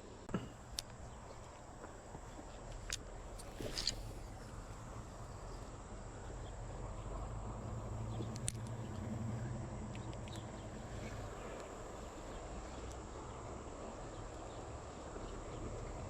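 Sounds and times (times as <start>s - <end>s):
sharp clicks: 8.2s - 9.1s, 9.9s - 10.5s.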